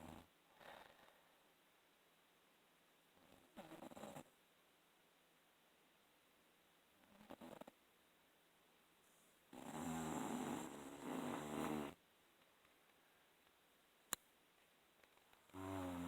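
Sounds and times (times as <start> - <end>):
rasping snore: 0.0 - 1.2, 3.2 - 4.3, 7.1 - 7.7, 9.5 - 12.0, 15.5 - 16.0.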